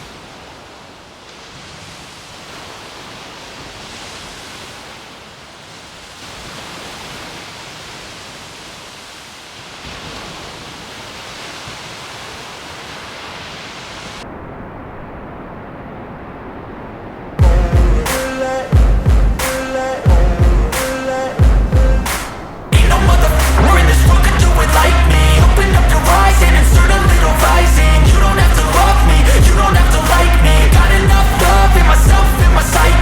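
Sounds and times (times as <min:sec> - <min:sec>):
ocean surf rushing: 0:00.0 - 0:33.0
wind on microphone: 0:09.8 - 0:33.0
loud music: 0:17.4 - 0:33.0.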